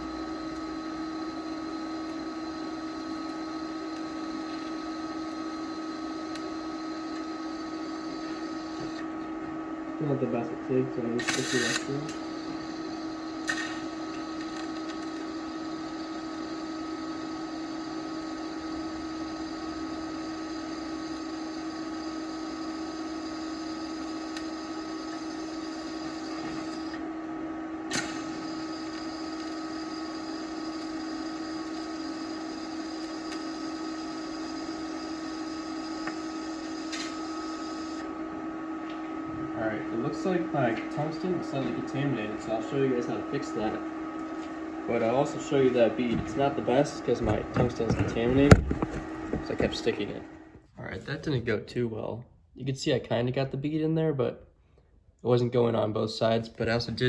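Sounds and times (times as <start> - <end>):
electrical hum: 0.0 - 54.6, 55.2 - 57.0
welding arc hissing: 11.2 - 26.9.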